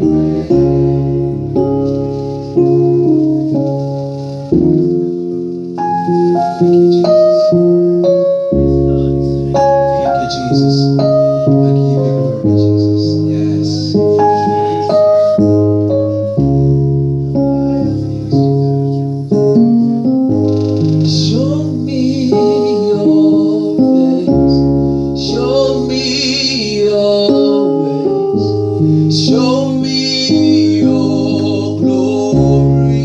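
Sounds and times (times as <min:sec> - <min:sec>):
person singing: 0:00.0 - 0:01.8, 0:21.0 - 0:33.0
keyboard playing held chords: 0:00.0 - 0:33.0.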